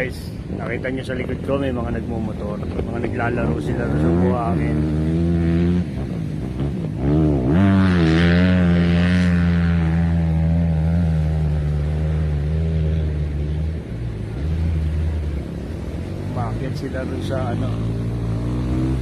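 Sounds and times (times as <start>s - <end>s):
dirt bike engines revving: 0.0s - 19.0s.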